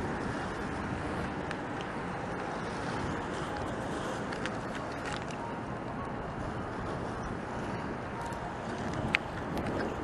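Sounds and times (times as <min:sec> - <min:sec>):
sea noise rushing: 0:00.0 - 0:10.0
wind buffeting microphone: 0:00.0 - 0:10.0.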